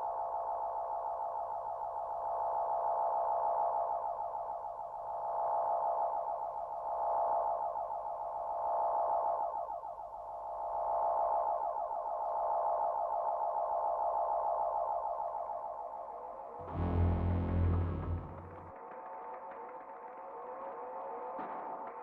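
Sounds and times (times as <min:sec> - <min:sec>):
shimmering electronic tones: 0:16.6 - 0:18.7.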